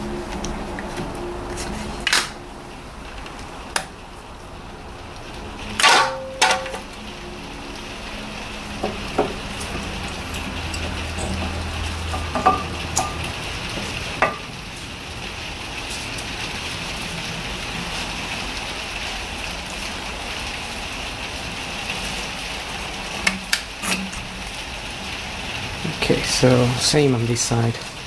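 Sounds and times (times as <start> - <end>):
steady hiss: 6.8 - 28.0.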